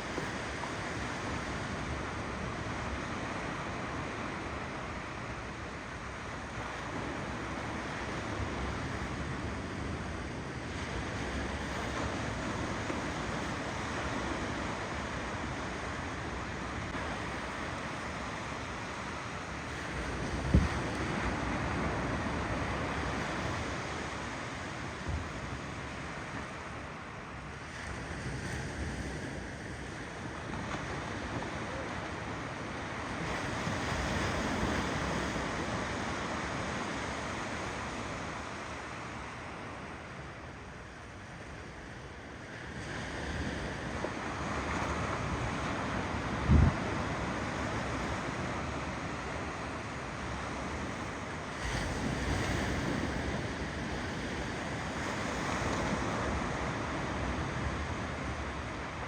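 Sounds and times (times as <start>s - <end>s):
ocean waves on shore: 0.0s - 59.0s
wind on microphone: 43.3s - 49.8s.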